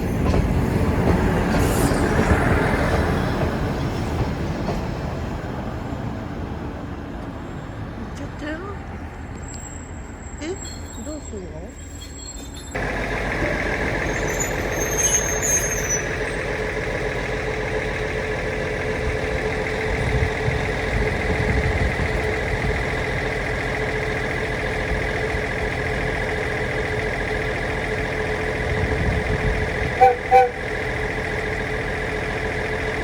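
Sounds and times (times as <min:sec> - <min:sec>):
vehicle engine rumbling: 0:00.0 - 0:33.0.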